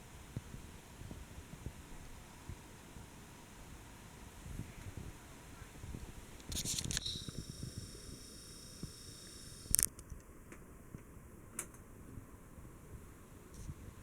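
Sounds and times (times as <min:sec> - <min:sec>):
faint high whine: 0:00.0 - 0:10.0
ceiling fan humming: 0:00.0 - 0:14.0
sharp clicks: 0:06.4 - 0:07.9, 0:08.8 - 0:10.2.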